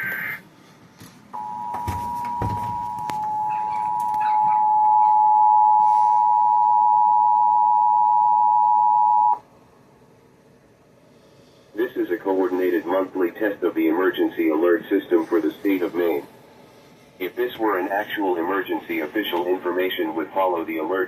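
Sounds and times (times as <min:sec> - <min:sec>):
screechy data burst: 0:00.0 - 0:00.4
steady two-tone alert signal: 0:01.4 - 0:09.4.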